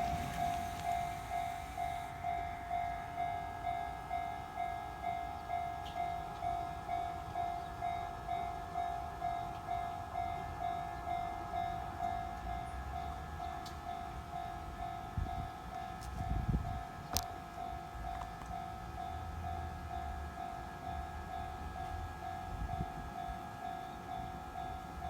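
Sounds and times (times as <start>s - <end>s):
high hiss: 0.0s - 2.1s
level crossing warning bell: 0.0s - 25.0s.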